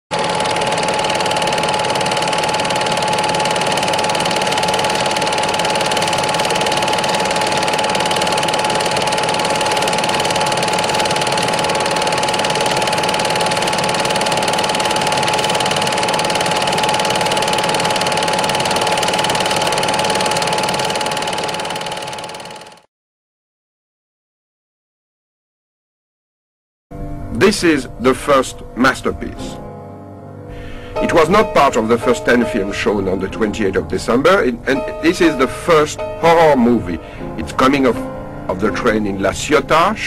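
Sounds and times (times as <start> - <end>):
mechanical whir with hum: 0.1 - 22.8.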